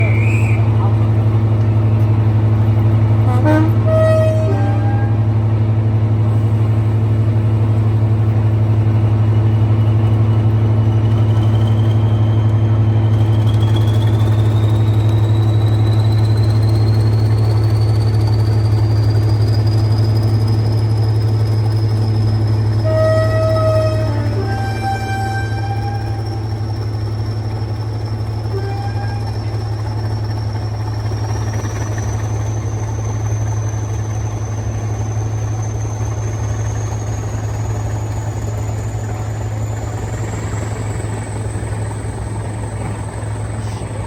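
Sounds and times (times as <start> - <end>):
diesel locomotive engine drone: 0.0 - 44.0
locomotive horn note: 3.2 - 5.3, 22.8 - 26.4, 28.5 - 29.6.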